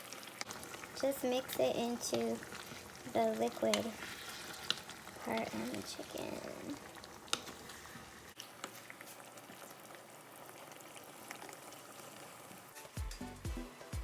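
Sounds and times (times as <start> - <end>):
sauce bubbling and sizzling in a pan: 0.0 - 14.0
small pops: 3.7 - 5.5, 6.7 - 7.6
music with a low beat: 13.0 - 14.0.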